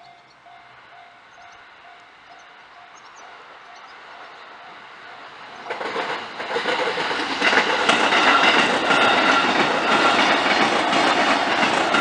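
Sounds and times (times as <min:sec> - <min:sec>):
train wheels on rails: 0:00.0 - 0:12.0.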